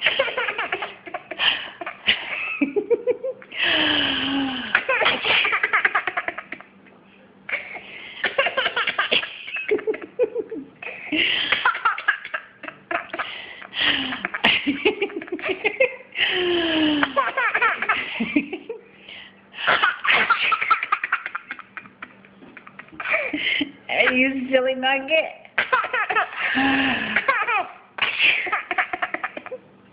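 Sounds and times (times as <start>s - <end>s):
baby giggling: 0.0s - 2.6s, 4.8s - 6.7s, 8.3s - 15.9s, 17.0s - 18.2s, 19.8s - 23.4s, 25.6s - 29.6s.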